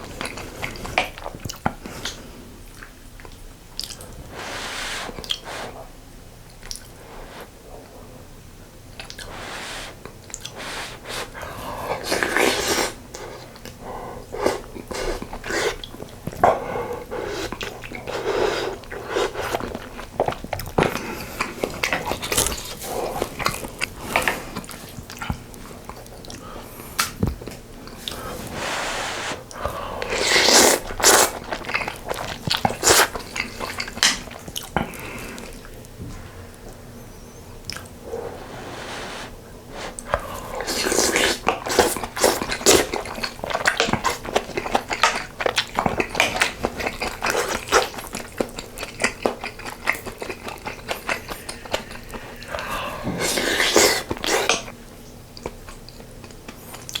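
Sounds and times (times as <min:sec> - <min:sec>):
chewing and biting: 0:14.4 - 0:28.3, 0:29.5 - 0:36.0, 0:40.0 - 0:54.8, 0:55.4 - 0:57.0.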